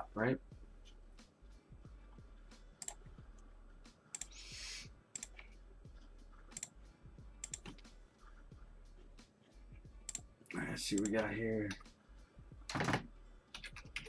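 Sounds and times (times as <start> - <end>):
keyboard and mouse clicks: 2.8 - 3.0, 5.2 - 5.5, 7.4 - 7.8, 12.7 - 14.0.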